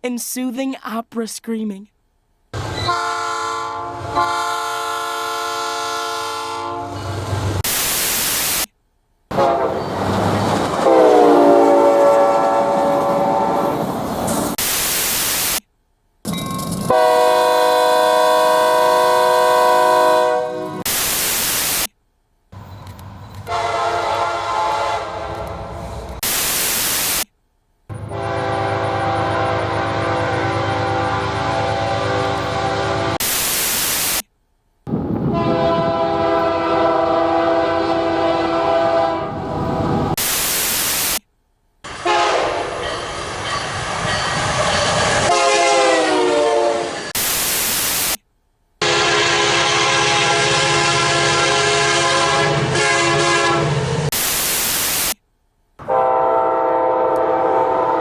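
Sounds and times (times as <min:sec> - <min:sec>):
train horns: 0:02.6 - 0:07.2, 0:09.3 - 0:14.0, 0:16.9 - 0:20.9, 0:23.4 - 0:26.3, 0:27.9 - 0:33.2, 0:35.2 - 0:40.2, 0:41.9 - 0:43.2, 0:44.0 - 0:47.2, 0:48.8 - 0:54.1, 0:55.8 - 0:58.0
bursts of hiss: 0:07.6 - 0:08.7, 0:14.5 - 0:15.6, 0:20.8 - 0:21.9, 0:26.2 - 0:27.3, 0:33.2 - 0:34.3, 0:40.2 - 0:41.2, 0:47.0 - 0:48.2, 0:54.1 - 0:55.2.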